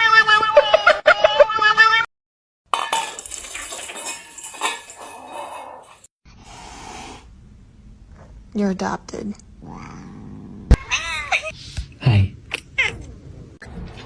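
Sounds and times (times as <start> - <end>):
dishes and cutlery clattering: 2.7 - 6.1.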